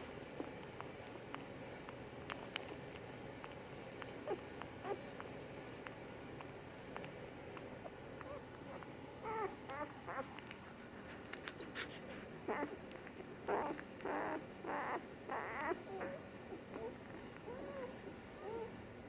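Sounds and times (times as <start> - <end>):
puppies squeaking and whimpering: 0.3 - 10.4, 11.7 - 18.8.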